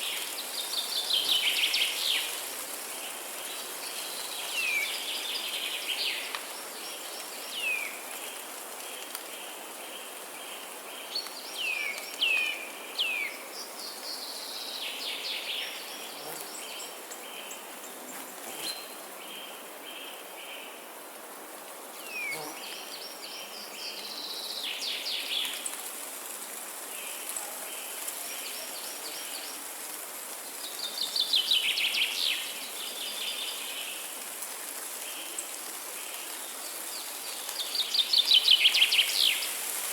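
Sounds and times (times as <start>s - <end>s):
steady background hiss: 0.0s - 39.9s.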